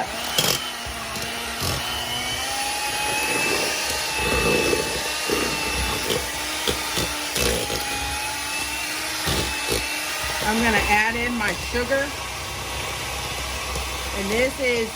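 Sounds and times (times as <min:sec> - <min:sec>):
electric mixer motor whine: 0:00.0 - 0:14.9.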